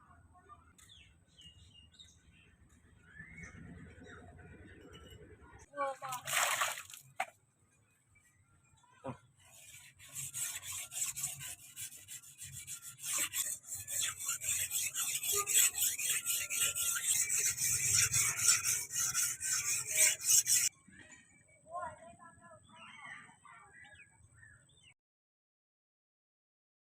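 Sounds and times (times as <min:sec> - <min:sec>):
blade rasping against abrasive: 0:09.4 - 0:20.7.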